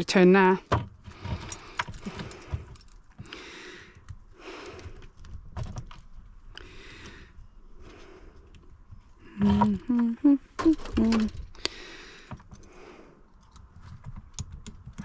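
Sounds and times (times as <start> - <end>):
rasping noises: 6.6 - 15.0.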